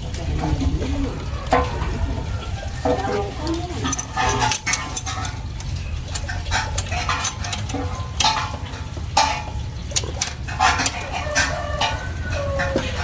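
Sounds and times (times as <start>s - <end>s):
low steady hum: 0.0s - 12.4s
metal tools clinking on metal: 2.9s - 12.5s.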